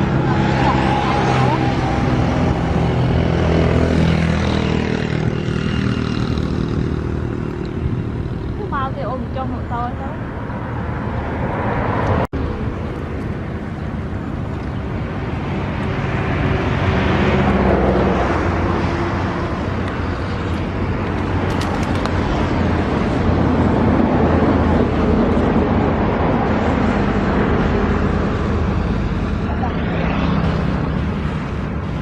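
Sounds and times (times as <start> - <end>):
small engine droning: 0.0 - 11.2
continuous rushing noise: 0.0 - 32.0.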